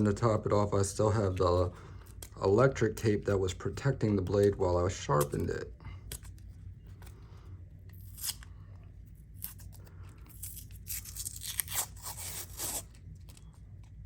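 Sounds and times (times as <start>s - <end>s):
tape peeling off metal: 7.9s - 8.5s, 9.3s - 13.5s.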